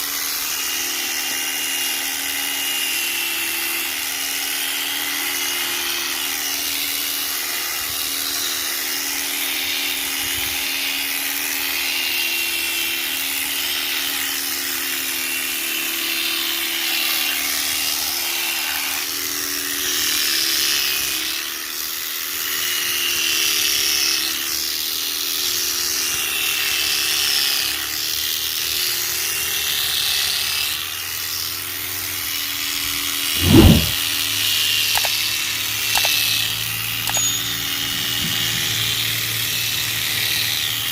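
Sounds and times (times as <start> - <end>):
electric shearing machine humming: 0.0 - 40.9
hiss of cutting: 33.4 - 34.0.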